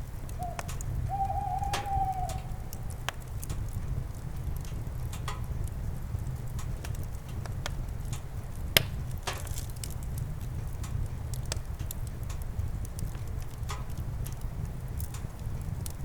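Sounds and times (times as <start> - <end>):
campfire crackling: 0.0 - 16.0
low rumble: 0.3 - 4.1
sharp pops of fire: 2.4 - 16.0.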